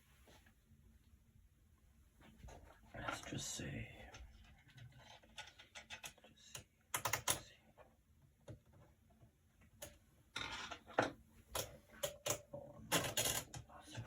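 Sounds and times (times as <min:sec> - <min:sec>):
small screws and metal parts clicking: 0:04.1 - 0:07.5.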